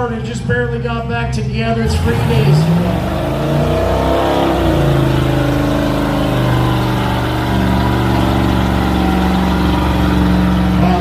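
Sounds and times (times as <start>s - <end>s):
truck engine revving high: 0.0s - 11.0s.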